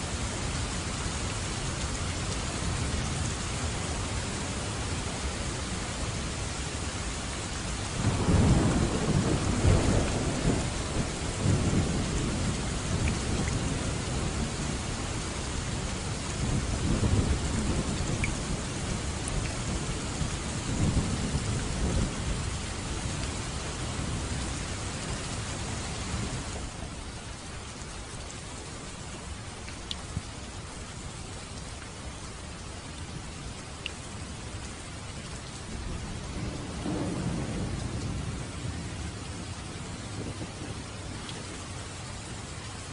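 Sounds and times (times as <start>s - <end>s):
steady rain falling: 0.0s - 42.9s
thunder rumbling: 8.0s - 15.0s, 15.6s - 27.0s, 35.6s - 41.6s.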